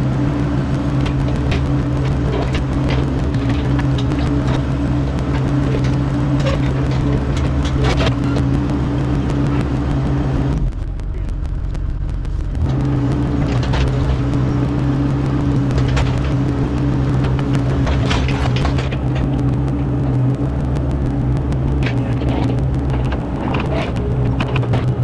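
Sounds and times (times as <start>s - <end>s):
excavator diesel engine running: 0.0s - 25.0s
machine clanks and knocks: 17.6s - 19.4s.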